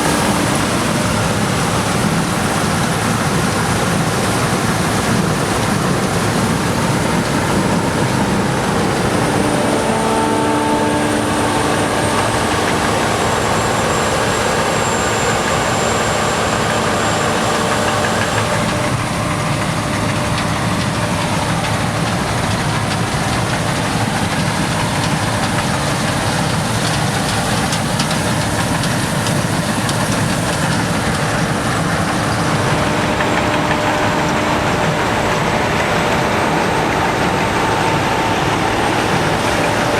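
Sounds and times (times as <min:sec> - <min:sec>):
combine harvester running: 0:00.0 - 0:39.9
steady tones: 0:05.4 - 0:21.2.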